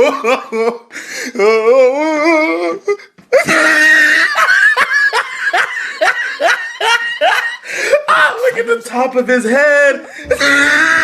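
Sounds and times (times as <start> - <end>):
person laughing loudly: 0.0 - 0.9, 3.3 - 8.4, 10.2 - 11.0.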